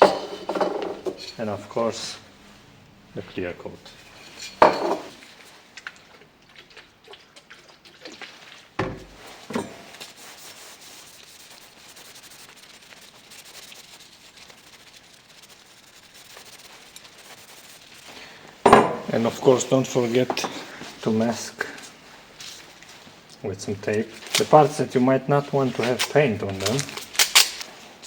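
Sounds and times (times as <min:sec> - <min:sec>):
objects knocking: 0:00.0 - 0:01.4, 0:04.4 - 0:05.2, 0:18.6 - 0:19.2, 0:20.3 - 0:20.6
faint rubbing: 0:09.1 - 0:26.9.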